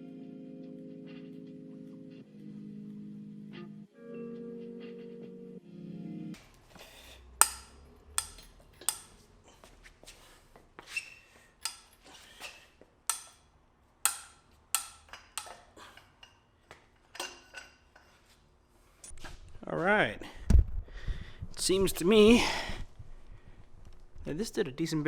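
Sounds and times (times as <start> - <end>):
wrench clicking on metal nut: 7.4 - 9.2, 13.1 - 13.4, 14.1 - 15.6.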